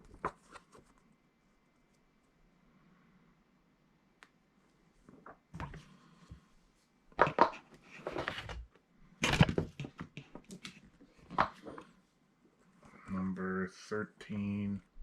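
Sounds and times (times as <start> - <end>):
comic books rustling: 7.2 - 12.0.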